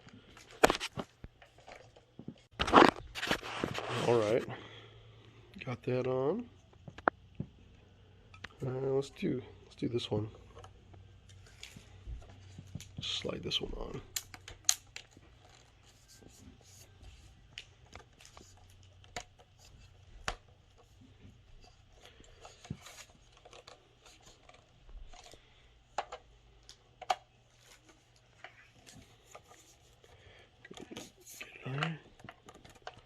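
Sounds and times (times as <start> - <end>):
plastic parts scraping: 0.3 - 4.5, 17.8 - 26.3, 27.0 - 33.0
plastic toy parts clicking: 31.6 - 33.0.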